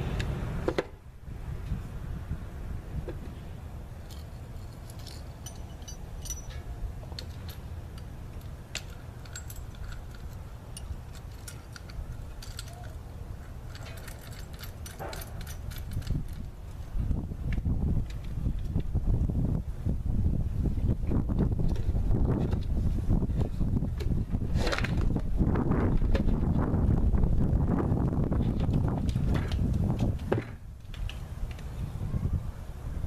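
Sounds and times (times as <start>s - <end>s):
steady low rumble: 0.0s - 33.0s
light clicks and clinks: 4.0s - 16.5s.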